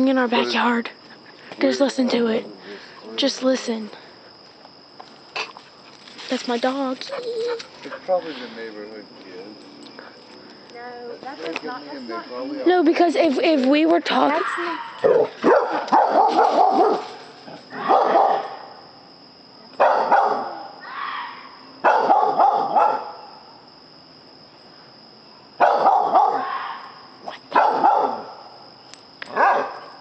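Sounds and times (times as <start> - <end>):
dog barking: 14.6 - 18.7, 19.8 - 20.7, 21.8 - 23.2, 25.6 - 26.9, 27.5 - 28.4, 29.3 - 29.9.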